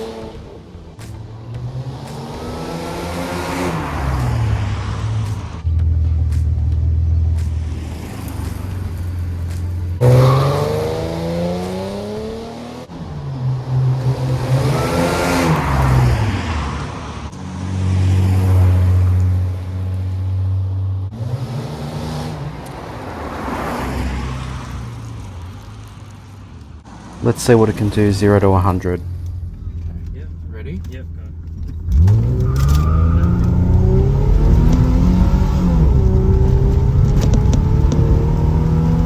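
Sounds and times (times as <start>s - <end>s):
car engine accelerating hard: 0.0s - 25.4s, 27.3s - 39.0s
car sweeping past: 1.8s - 5.7s, 7.2s - 26.1s.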